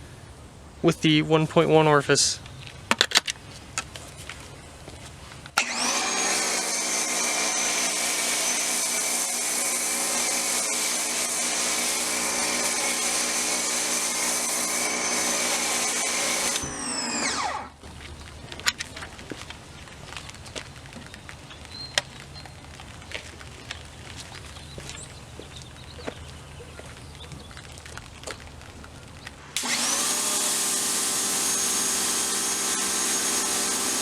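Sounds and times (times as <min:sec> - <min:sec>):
electric pressure washer running: 0:05.6 - 0:17.8, 0:29.6 - 0:34.0.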